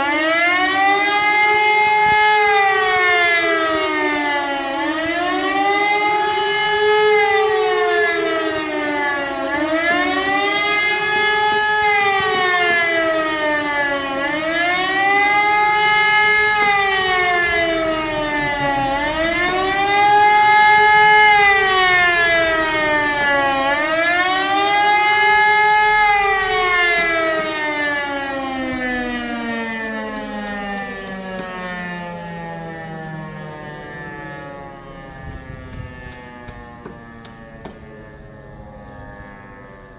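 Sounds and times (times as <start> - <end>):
siren wailing: 0.0 - 39.9.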